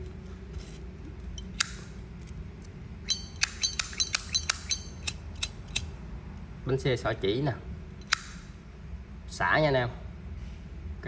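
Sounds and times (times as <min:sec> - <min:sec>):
lighter sharp metallic clinks: 0:03.1 - 0:05.9.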